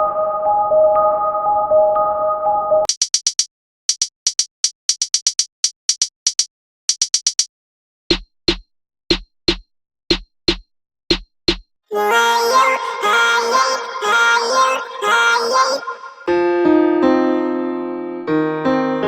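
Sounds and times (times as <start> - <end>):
drum-machine beat: 2.9 - 7.5, 8.1 - 11.7
hi-hat-like clicks: 2.9 - 7.5.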